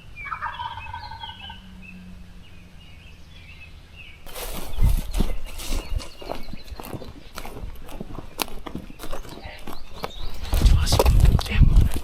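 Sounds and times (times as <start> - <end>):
small birds chirping: 0.0 - 12.0
turkey gobbling: 0.2 - 1.8.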